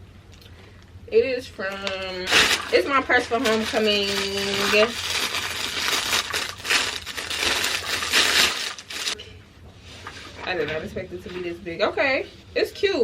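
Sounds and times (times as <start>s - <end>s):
packaging crackling and crinkling: 1.7s - 9.2s.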